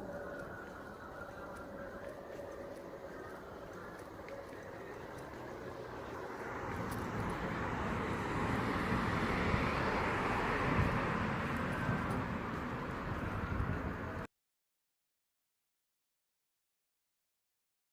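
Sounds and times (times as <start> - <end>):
passing vehicle rushing: 5.3 - 14.3.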